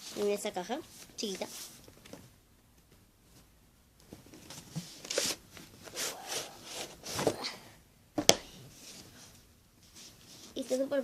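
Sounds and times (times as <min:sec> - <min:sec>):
cardboard scraping and rustling: 0:04.4 - 0:07.4.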